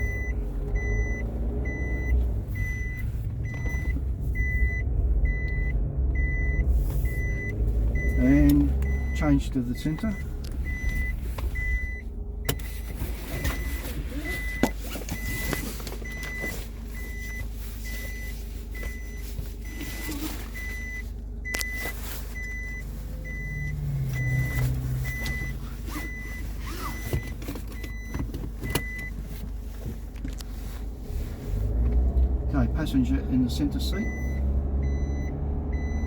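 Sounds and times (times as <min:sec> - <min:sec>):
seat-belt reminder chime: 0:00.0 - 0:12.6, 0:13.4 - 0:29.2
steady low rumble: 0:00.0 - 0:26.6.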